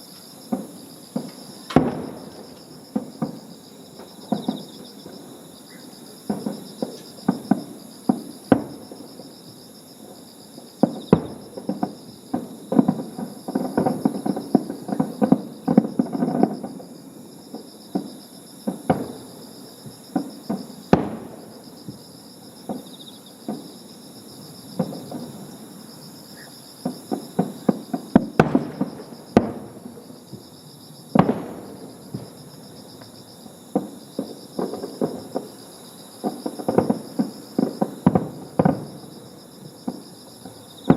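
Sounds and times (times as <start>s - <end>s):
fireworks crackling: 0.0s - 5.3s, 10.6s - 23.8s, 26.7s - 30.5s, 31.1s - 40.9s
insects trilling: 0.0s - 40.9s
fireworks bangs: 0.5s - 5.2s, 6.2s - 9.3s, 10.8s - 16.9s, 17.5s - 22.1s, 24.7s - 25.6s, 26.8s - 30.5s, 31.1s - 32.7s, 33.4s - 35.6s, 36.2s - 40.9s.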